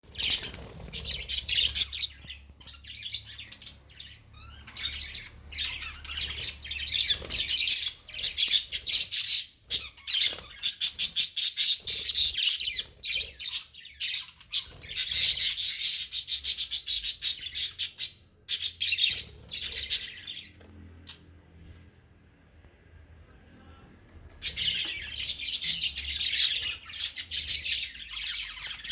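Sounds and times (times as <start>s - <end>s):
small birds chirping and squawking: 0.0s - 22.0s, 23.1s - 28.9s.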